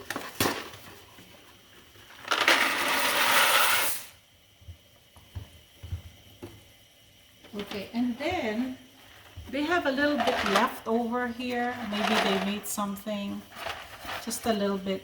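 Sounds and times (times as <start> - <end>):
dry pasta rattling into a pot: 2.1 - 4.1, 11.6 - 12.8.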